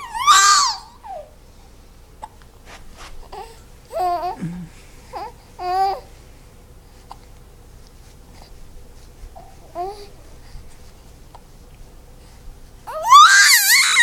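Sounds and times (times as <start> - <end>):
child squealing: 0.0 - 1.2, 12.9 - 14.0.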